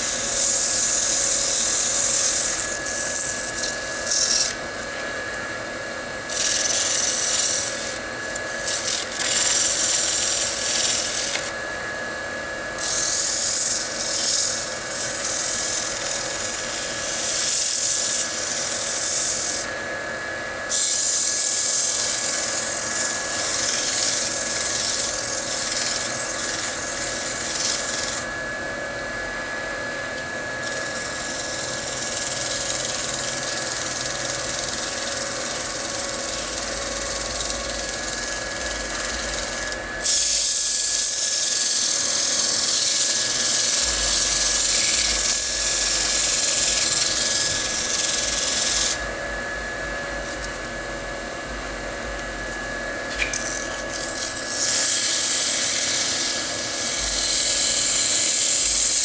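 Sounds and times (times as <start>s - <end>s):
sandpaper hissing on wood: 0.0s - 4.6s, 6.3s - 11.5s, 12.8s - 19.7s, 20.7s - 28.3s, 30.6s - 49.0s, 53.2s - 59.0s
wood lathe motor whine: 0.0s - 59.0s.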